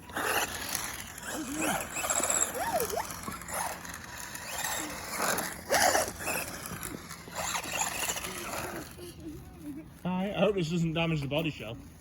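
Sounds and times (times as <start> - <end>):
sliding pitched sounds: 0.0 - 9.6.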